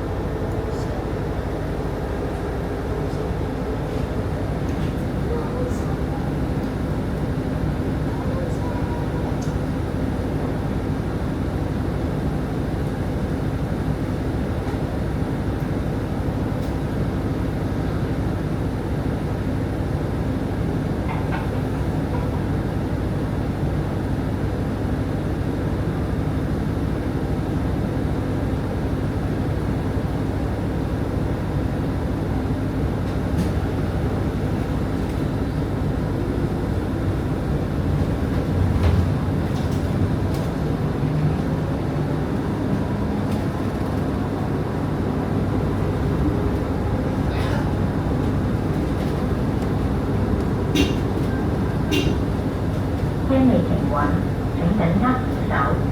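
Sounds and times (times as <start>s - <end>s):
bus engine and road rumble: 0.0s - 55.9s.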